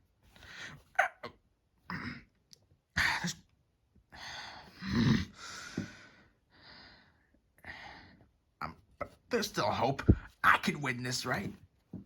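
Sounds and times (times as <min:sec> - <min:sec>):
person breathing and sighing: 0:04.1 - 0:08.4.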